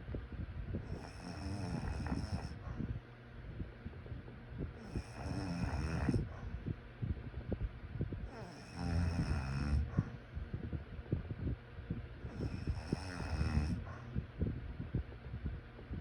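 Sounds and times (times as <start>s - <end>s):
person snoring: 0.9s - 2.6s, 4.8s - 6.3s, 8.3s - 10.2s, 12.3s - 14.0s.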